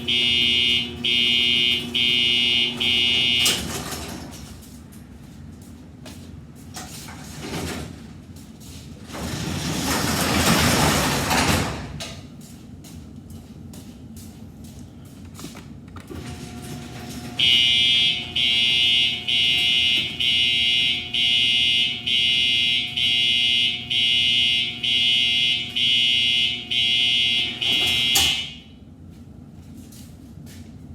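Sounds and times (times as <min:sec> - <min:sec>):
electronic buzzer pulses: 0:00.0 - 0:03.8, 0:17.4 - 0:28.6.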